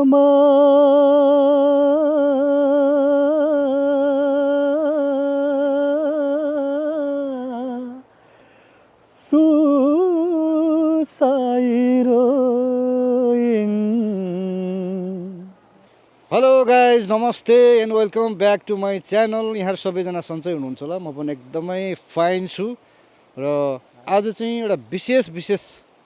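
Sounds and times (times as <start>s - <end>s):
person singing unaccompanied: 0.0s - 8.1s, 9.0s - 25.7s
sharp intake of breath: 8.1s - 9.0s, 22.8s - 23.4s.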